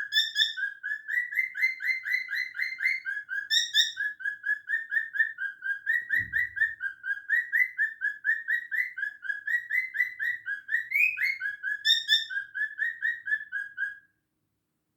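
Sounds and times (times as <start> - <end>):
parrot chirping: 0.0 - 14.0
low thump: 6.1 - 6.8.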